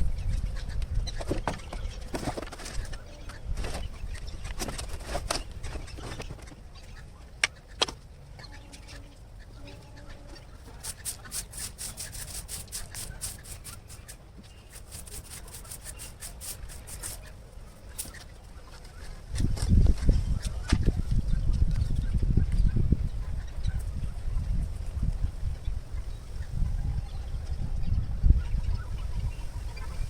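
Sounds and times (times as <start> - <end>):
chickens calling: 0.0 - 30.0
scrubbing strokes: 10.6 - 18.2.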